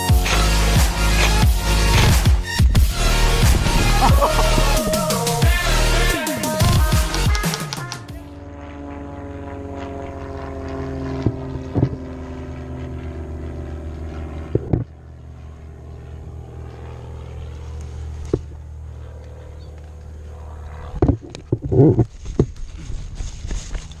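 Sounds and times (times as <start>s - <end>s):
low mechanical hum: 0.0s - 24.0s
sharp clicks: 6.6s - 8.1s.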